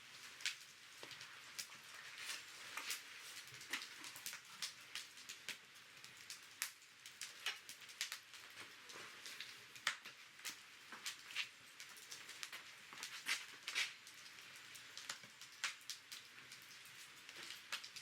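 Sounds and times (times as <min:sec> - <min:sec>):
campfire crackling and popping: 0:00.0 - 0:18.0.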